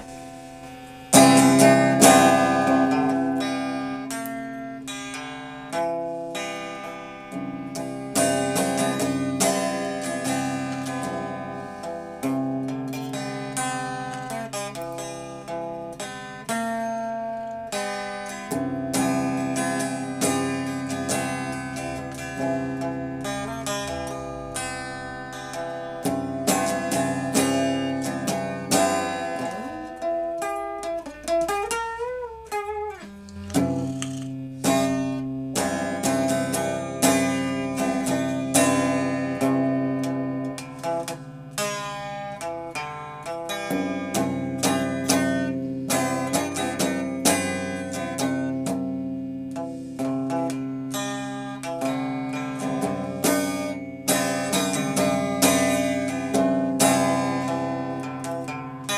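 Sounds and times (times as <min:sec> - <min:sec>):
plucked string instrument music: 0:00.0 - 0:58.9.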